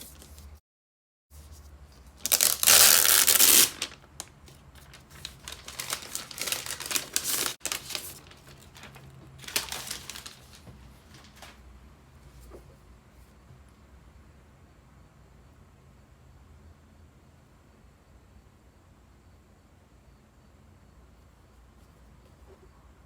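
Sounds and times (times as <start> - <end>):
packaging crinkling: 2.2 - 11.6.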